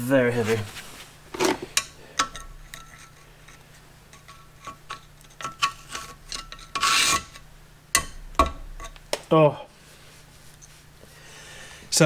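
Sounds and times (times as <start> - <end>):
metal scraping rub: 2.6 - 7.4.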